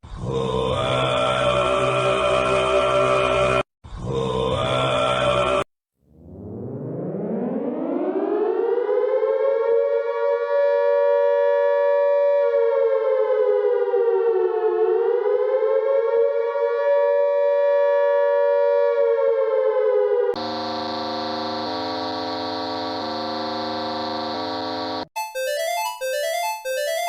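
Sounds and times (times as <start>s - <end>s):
civil defense siren wailing: 6.3s - 25.1s
steady alarm tone: 15.0s - 27.0s.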